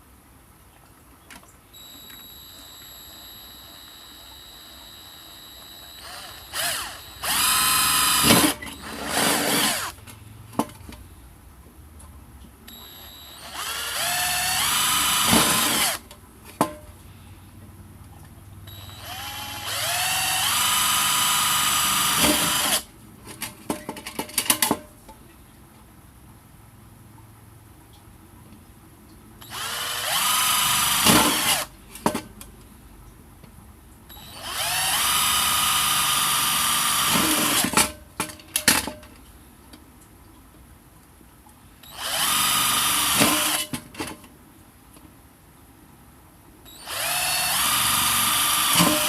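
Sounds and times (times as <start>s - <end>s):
power drill motor whine: 1.8s - 10.0s, 12.7s - 16.0s, 18.7s - 22.9s, 29.4s - 31.7s, 34.1s - 37.8s, 41.8s - 43.7s, 46.7s - 49.0s.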